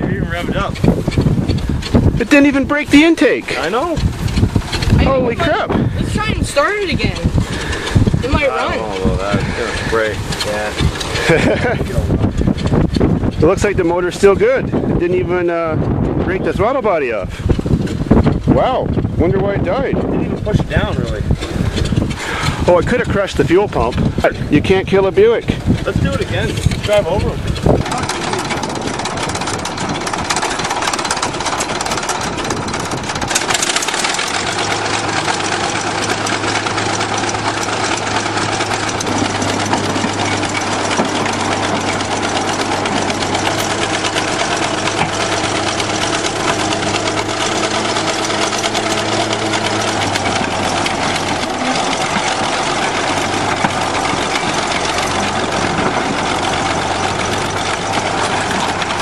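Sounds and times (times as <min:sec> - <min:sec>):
bulldozer engine clattering: 0:00.0 - 0:59.0
steady low hum: 0:00.0 - 0:59.0.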